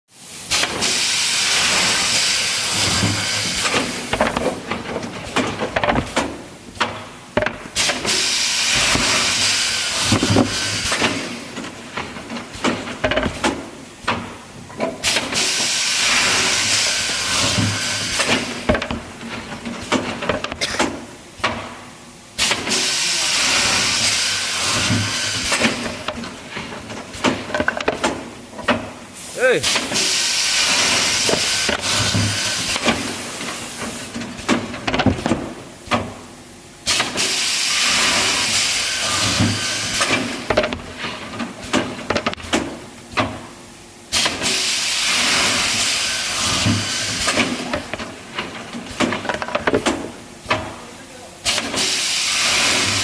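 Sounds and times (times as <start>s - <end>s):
machine knocks and clicks: 3.0s - 8.0s, 12.0s - 15.0s
drilling machine hissing: 8.1s - 11.4s, 22.8s - 24.5s.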